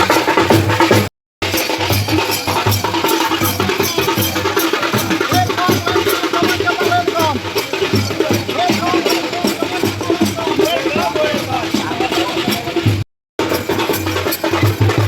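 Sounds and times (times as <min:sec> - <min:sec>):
clicking percussion: 0:00.0 - 0:15.0
music with drum beat: 0:00.0 - 0:15.0.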